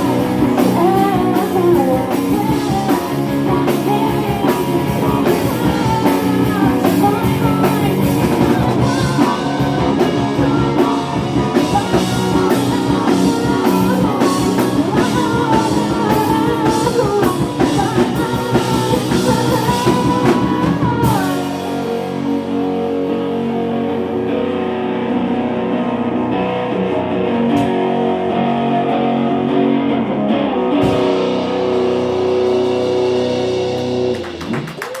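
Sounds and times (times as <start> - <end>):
person singing: 0.0 - 26.5
drum kit: 0.0 - 29.2, 30.7 - 35.0
electric guitars: 0.0 - 35.0.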